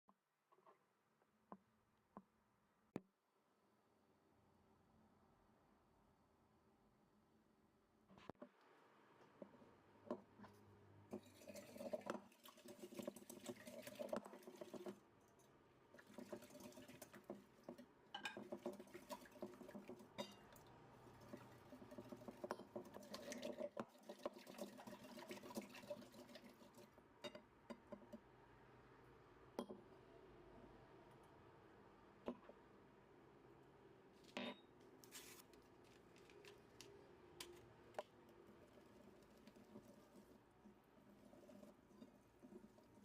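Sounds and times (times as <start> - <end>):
batter mixed in a bowl: 10.2 - 26.8, 34.9 - 43.0
liquid sounds: 11.1 - 17.8, 18.4 - 27.0.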